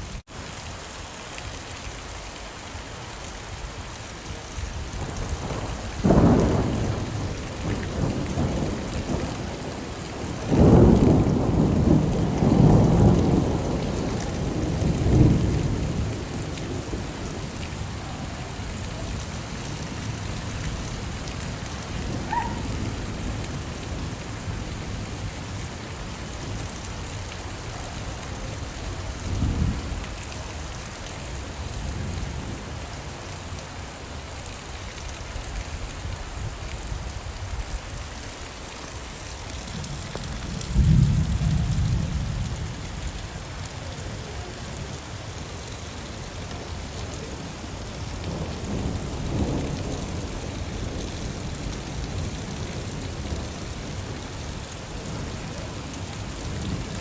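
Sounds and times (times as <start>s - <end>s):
steady rain falling: 0.0s - 57.0s
thunder rumbling: 4.9s - 30.2s, 39.7s - 43.1s.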